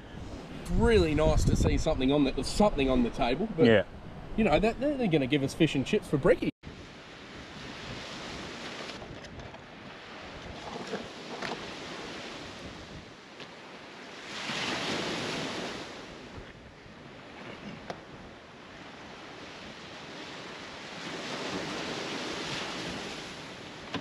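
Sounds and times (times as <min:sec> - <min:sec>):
wind on the microphone: 0:00.0 - 0:05.0, 0:06.6 - 0:13.2, 0:14.3 - 0:24.0
surf washing onto a beach: 0:06.7 - 0:16.4, 0:17.2 - 0:24.0.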